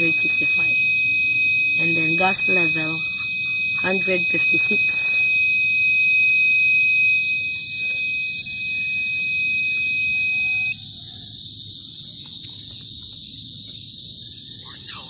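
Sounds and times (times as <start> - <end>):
gas detector buzzer tone: 0.0 - 10.8
high background chirring: 0.0 - 10.8.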